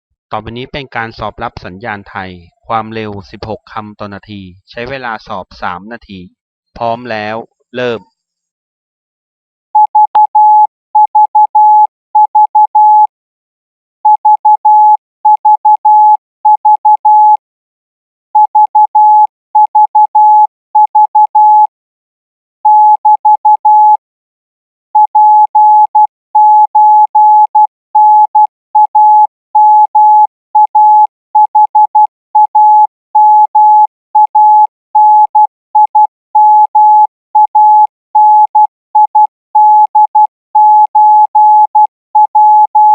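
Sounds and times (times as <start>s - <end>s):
morse code tone: 9.8s - 13.1s, 14.2s - 17.4s, 18.4s - 21.7s, 22.6s - 24.0s, 25.0s - 42.9s.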